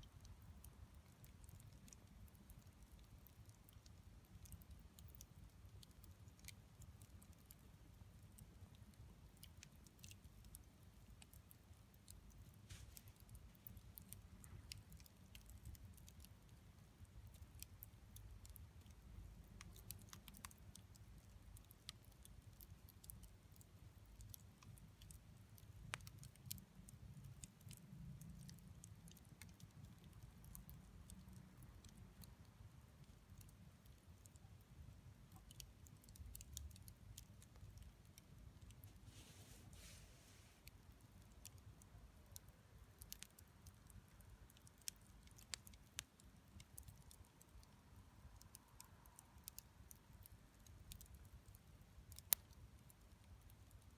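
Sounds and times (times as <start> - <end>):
low steady fire rumble: 0.0 - 53.9
campfire crackles and pops: 40.6 - 53.9.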